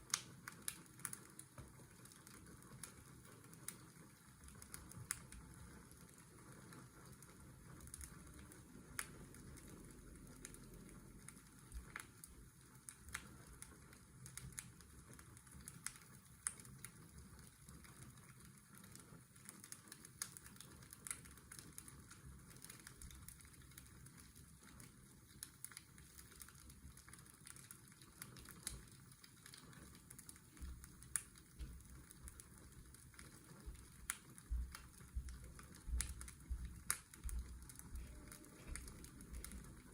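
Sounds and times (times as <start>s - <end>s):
fireplace crackling and popping: 0.0s - 39.9s
washing machine drone: 35.2s - 39.9s.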